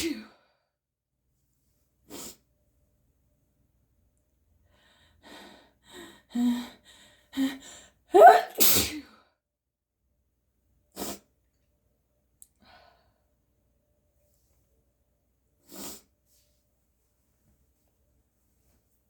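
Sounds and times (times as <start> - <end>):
loud sneeze: 8.2 - 9.1.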